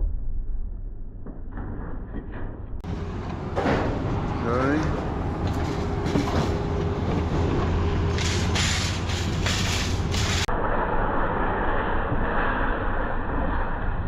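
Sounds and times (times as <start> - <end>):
engine running: 2.8 - 13.8
loud metallic rattling: 3.5 - 10.5.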